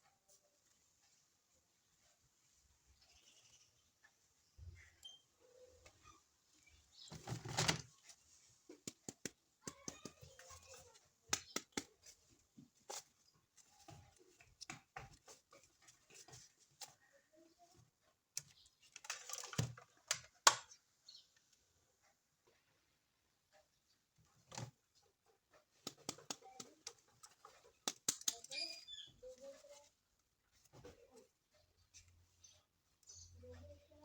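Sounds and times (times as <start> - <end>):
small clicks and taps: 5.8 - 17.1, 17.7 - 21.6, 23.5 - 29.9.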